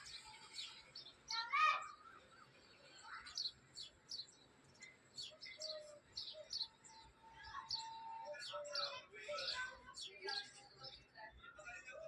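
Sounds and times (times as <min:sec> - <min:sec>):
small birds chirping: 0:00.0 - 0:12.0
low whistled bird notes: 0:05.2 - 0:09.0.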